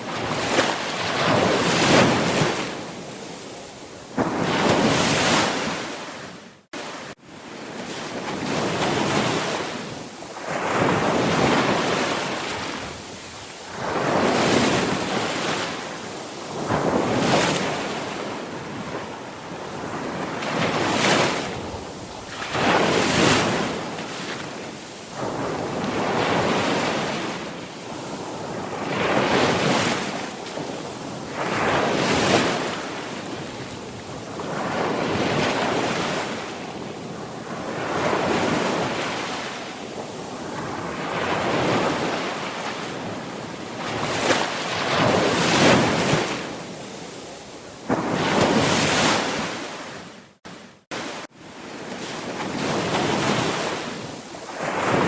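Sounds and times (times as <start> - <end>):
sea waves breaking: 0.0 - 55.0.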